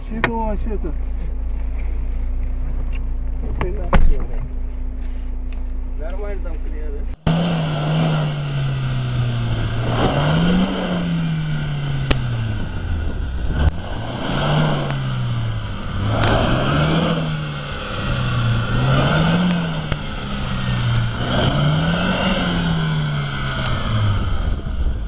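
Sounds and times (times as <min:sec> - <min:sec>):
car engine revving: 0:07.1 - 0:25.0
rushing noise: 0:07.2 - 0:25.0.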